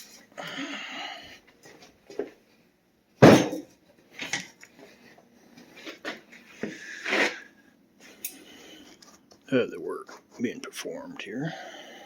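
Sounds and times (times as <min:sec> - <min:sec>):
objects clicking and clunking: 0:03.2 - 0:05.0.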